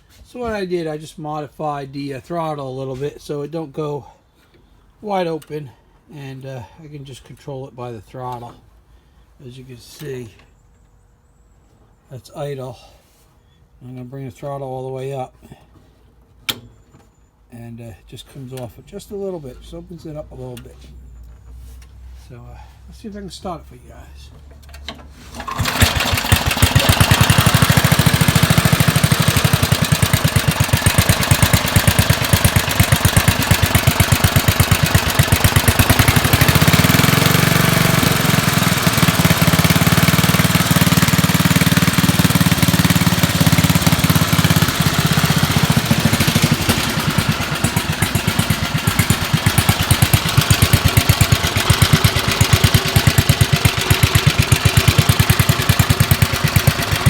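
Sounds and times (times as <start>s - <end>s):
single-cylinder engine running: 25.3s - 57.0s.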